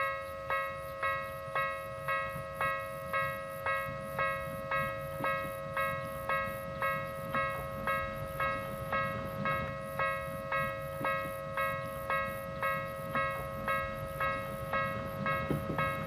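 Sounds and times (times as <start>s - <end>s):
level-crossing alarm ringing: 0.0s - 16.0s
low train rumble: 0.0s - 16.0s.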